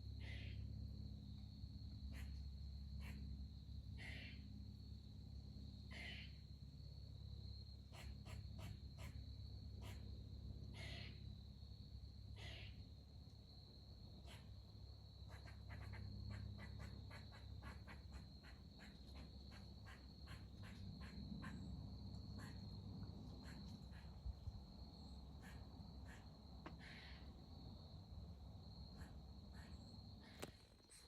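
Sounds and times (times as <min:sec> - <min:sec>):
insect chirps: 0:00.0 - 0:31.0
insect drone: 0:00.0 - 0:31.0.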